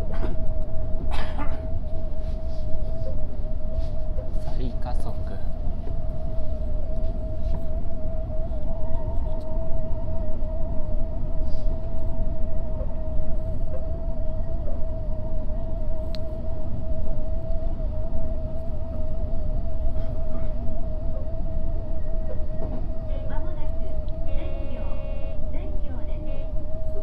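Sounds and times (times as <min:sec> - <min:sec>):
constant electric whine: 0:00.0 - 0:27.0
train rumble: 0:00.0 - 0:27.0.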